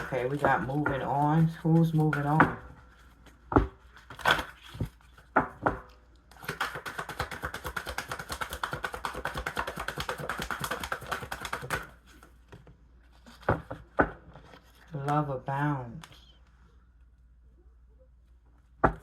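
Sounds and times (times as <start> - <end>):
cards being shuffled: 0.3 - 5.3, 6.3 - 15.1.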